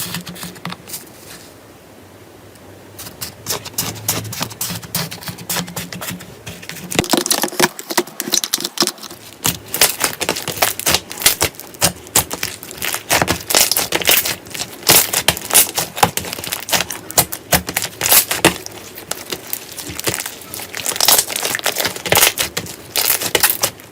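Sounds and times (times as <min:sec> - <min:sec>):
slime squeezed crackling: 0:07.0 - 0:23.9.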